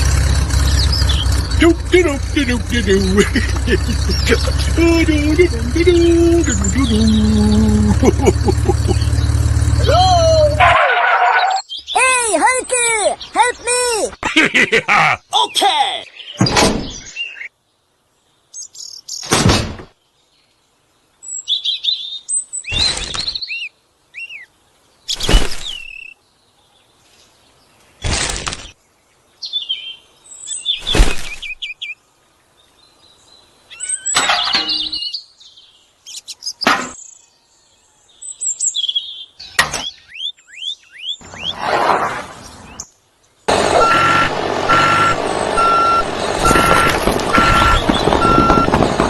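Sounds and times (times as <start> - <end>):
birds chirping and whistling: 0.5 - 10.6, 16.1 - 17.5, 21.2 - 26.2, 29.4 - 32.0, 32.8 - 37.2, 38.2 - 41.6, 44.7 - 48.8.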